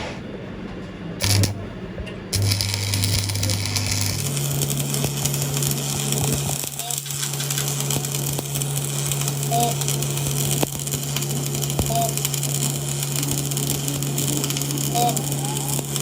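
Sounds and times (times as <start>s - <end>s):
low machine hum: 0.0s - 16.0s
hiss: 5.1s - 16.0s.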